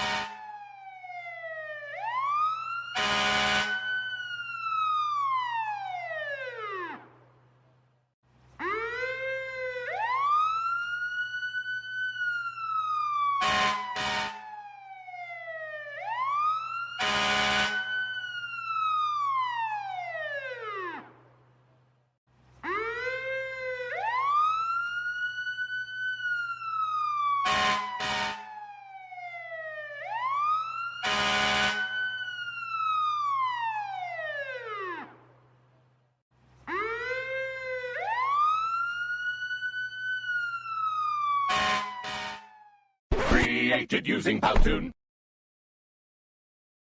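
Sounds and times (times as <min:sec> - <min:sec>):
horn blasts: 0:00.0 - 0:00.4, 0:03.0 - 0:03.8, 0:13.4 - 0:14.4, 0:17.0 - 0:17.9, 0:27.4 - 0:28.4, 0:31.0 - 0:31.9, 0:41.5 - 0:42.5
fire truck siren wailing: 0:00.0 - 0:07.3, 0:08.6 - 0:21.4, 0:22.6 - 0:35.6, 0:36.7 - 0:43.0.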